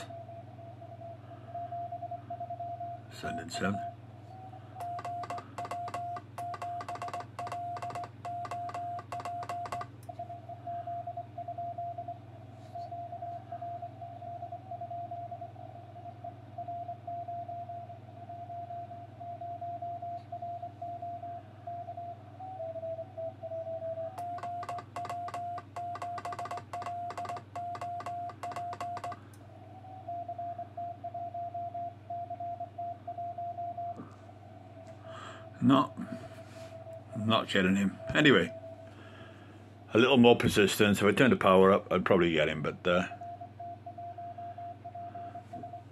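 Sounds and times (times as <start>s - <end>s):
low hum: 0.0s - 40.7s
morse code tone: 4.8s - 12.0s, 22.5s - 29.2s, 35.2s - 41.6s.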